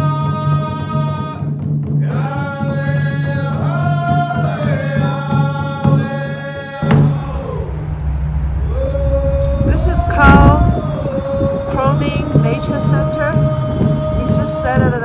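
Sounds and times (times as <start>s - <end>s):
long sliding melodic notes: 6.8s - 13.4s
steady low drum: 6.8s - 15.0s.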